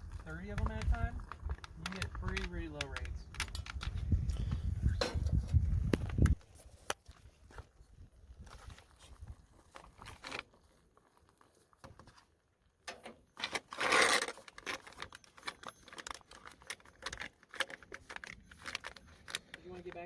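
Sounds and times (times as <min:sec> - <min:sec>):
pouch crinkling and rustling: 0:00.0 - 0:03.9, 0:08.4 - 0:12.4, 0:13.3 - 0:20.0.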